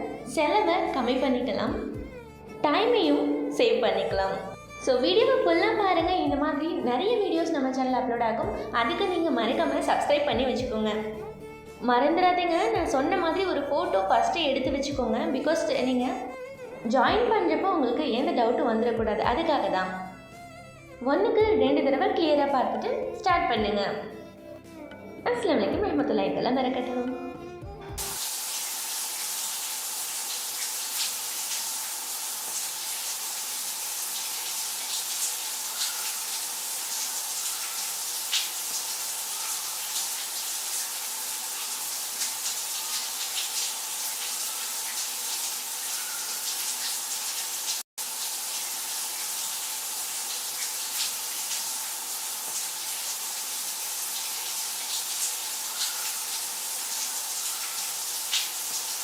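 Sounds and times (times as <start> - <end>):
water running from a tap: 4.1 - 11.3, 28.0 - 59.0.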